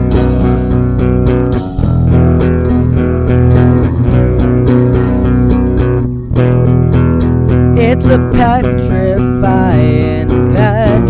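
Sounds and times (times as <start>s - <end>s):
bass guitar: 0.0s - 11.0s
guitar: 0.0s - 11.0s.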